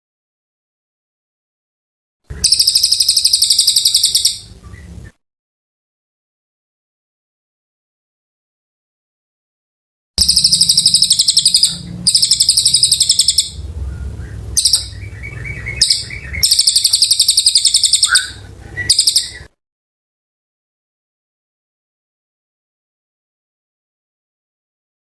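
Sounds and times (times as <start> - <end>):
songbird singing rapid notes: 2.3 - 5.1, 10.2 - 19.5
low rumble: 10.2 - 16.9, 18.0 - 18.9.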